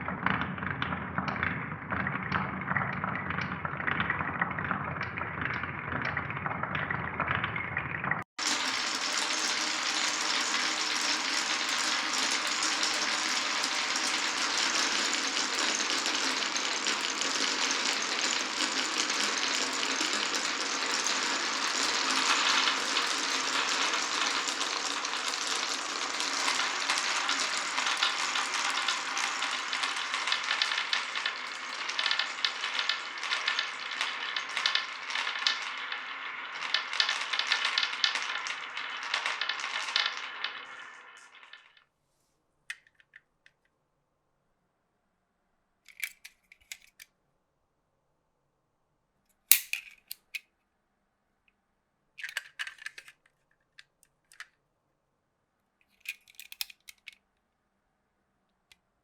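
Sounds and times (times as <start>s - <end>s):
marbles rolling on a track: 0.0s - 41.9s, 56.0s - 57.2s.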